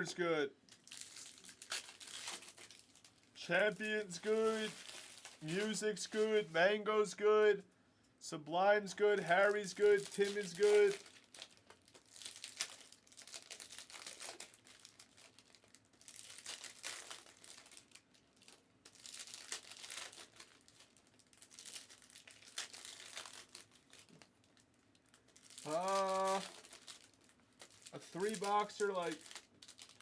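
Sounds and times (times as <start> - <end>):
plastic packaging crinkling: 0.6 - 6.5, 9.4 - 30.0.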